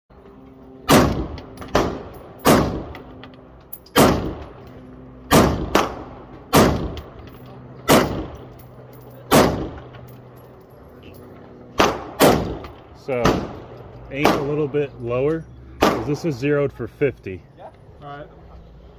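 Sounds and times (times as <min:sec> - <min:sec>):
rifle shots: 0:00.9 - 0:03.0, 0:03.9 - 0:04.5, 0:05.3 - 0:07.0, 0:07.9 - 0:08.4, 0:09.3 - 0:09.8, 0:11.8 - 0:14.7.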